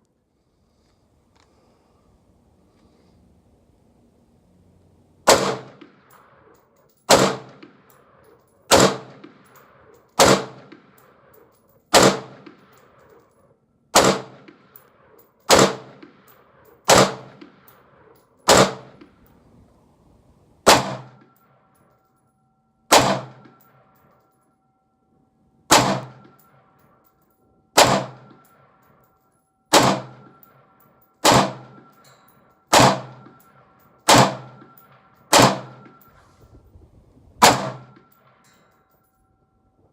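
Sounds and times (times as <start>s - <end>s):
rifle gunshots: 5.3s - 6.1s, 7.1s - 7.9s, 8.7s - 9.6s, 10.2s - 11.0s, 11.9s - 12.8s, 14.0s - 14.8s, 15.5s - 17.7s, 18.5s - 19.0s, 20.6s - 21.2s, 22.9s - 23.6s, 25.7s - 26.4s, 27.8s - 28.4s, 29.7s - 30.3s, 31.2s - 31.9s, 32.7s - 33.4s, 34.1s - 35.9s, 37.4s - 38.2s.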